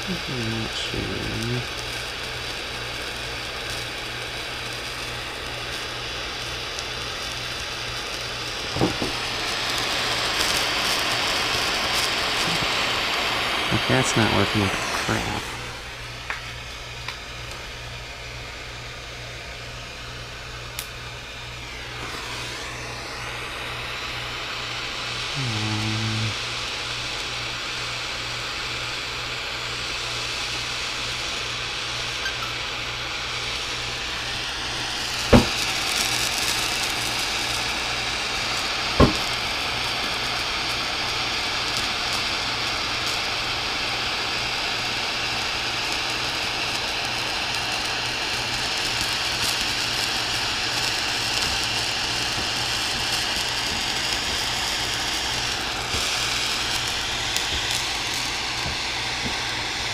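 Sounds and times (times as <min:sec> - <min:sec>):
torch flame hissing: 0:00.0 - 0:59.9
sharp knocks: 0:08.8 - 0:09.2, 0:35.4 - 0:35.6, 0:39.0 - 0:39.3.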